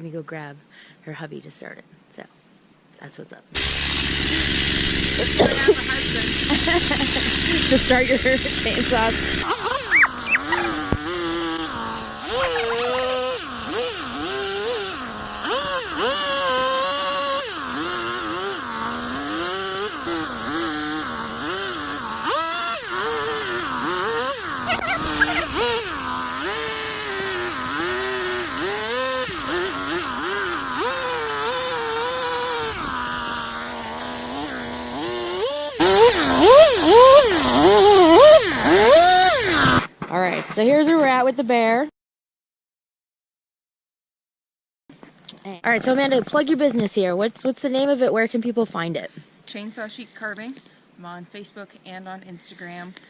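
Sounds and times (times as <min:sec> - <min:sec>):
chainsaw revving cutting wood: 0:03.6 - 0:39.9.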